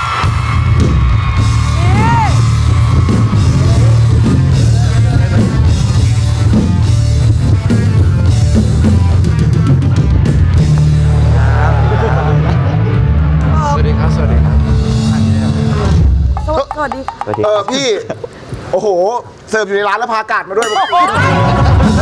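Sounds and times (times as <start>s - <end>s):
rock music: 0.0s - 17.3s, 20.6s - 22.0s
heavy bass line: 0.2s - 16.7s, 21.2s - 22.0s.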